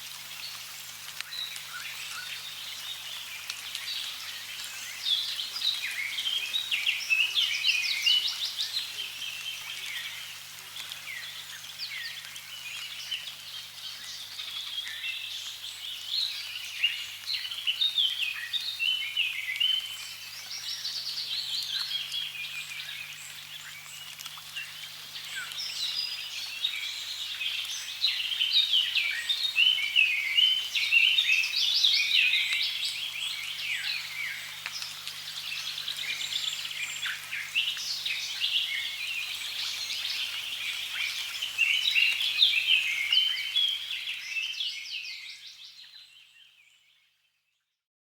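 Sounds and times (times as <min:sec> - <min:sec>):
running water: 0:00.0 - 0:17.9
small birds chirping: 0:00.2 - 0:47.1.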